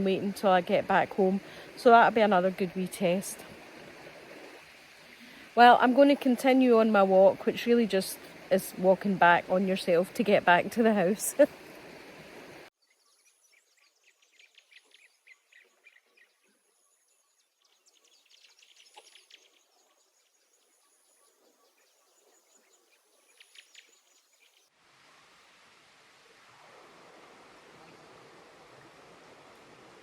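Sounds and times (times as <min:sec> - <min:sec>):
birds chirping: 0:00.0 - 0:24.7
steady low hiss: 0:22.1 - 0:30.0.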